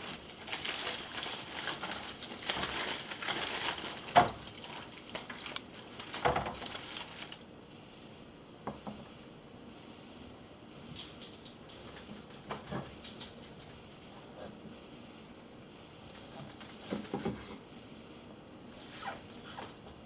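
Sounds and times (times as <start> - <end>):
aluminium foil crinkling: 0.0 - 7.5.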